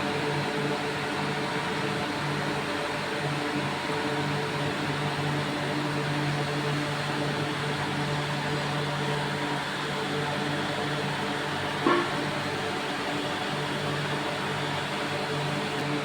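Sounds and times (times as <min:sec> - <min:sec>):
industrial machinery humming: 0:11.8 - 0:12.6.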